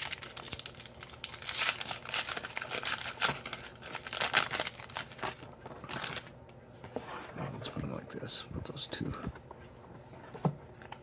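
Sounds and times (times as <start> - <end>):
foil pack crinkling: 0.0 - 6.4.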